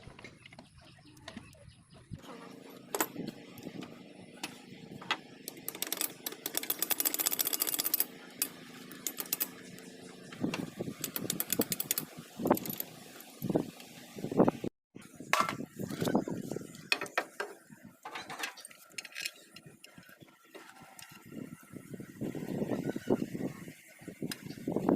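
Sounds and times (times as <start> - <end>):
metallic clicking and rattling: 4.4 - 13.4.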